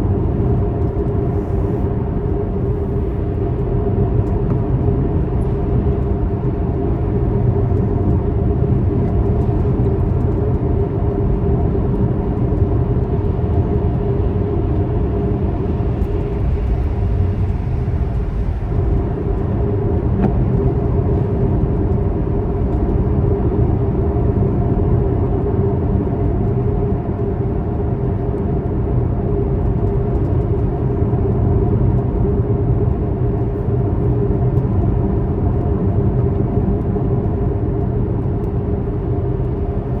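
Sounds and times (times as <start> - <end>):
vehicle engine rumbling: 0.0 - 40.0.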